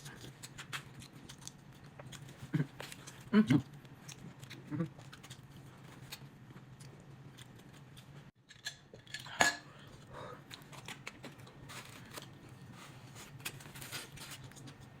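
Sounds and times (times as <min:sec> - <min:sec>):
chewing fried meat: 0:00.0 - 0:08.3.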